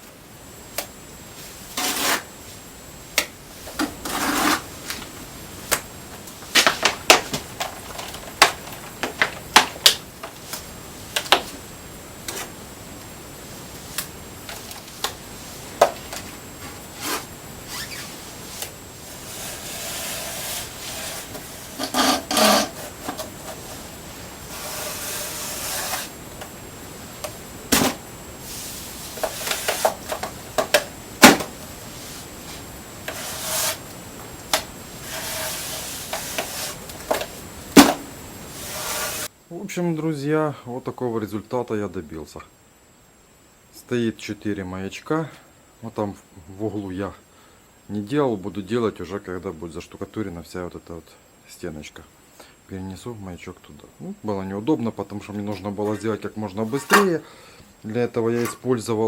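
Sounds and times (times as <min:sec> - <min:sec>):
trowel scraping mortar: 0:01.7 - 0:02.3, 0:03.7 - 0:04.9, 0:16.6 - 0:23.9, 0:24.5 - 0:26.2, 0:27.7 - 0:33.9, 0:34.5 - 0:39.3.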